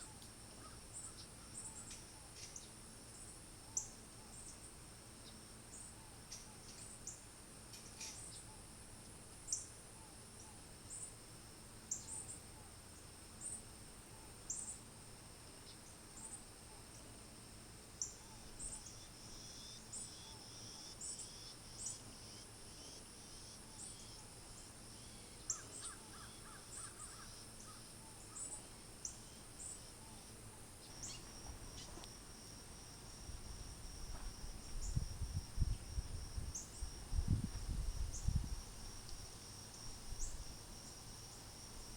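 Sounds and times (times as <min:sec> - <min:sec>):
high-pitched insect trilling: 0:18.0 - 0:41.9.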